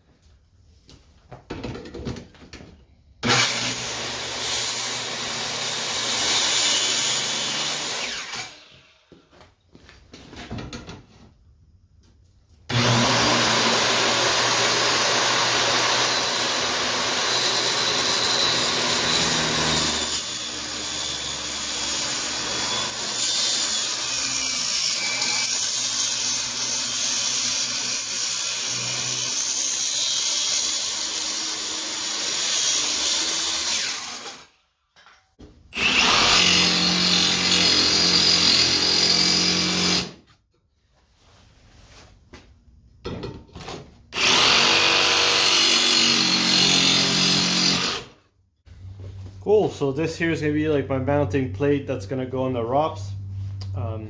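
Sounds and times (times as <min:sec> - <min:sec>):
circular saw cutting steel: 0:03.2 - 0:08.6, 0:12.7 - 0:34.2.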